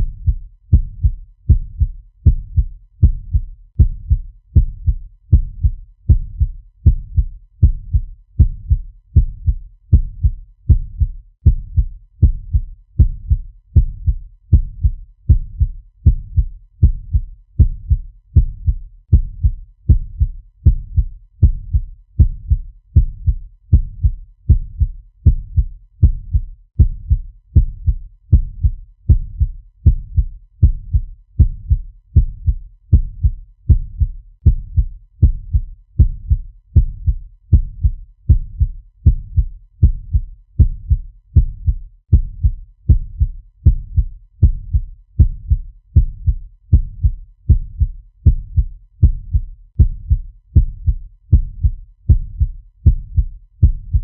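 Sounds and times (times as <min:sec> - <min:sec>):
fast heartbeat thumps: 0:00.0 - 0:54.0.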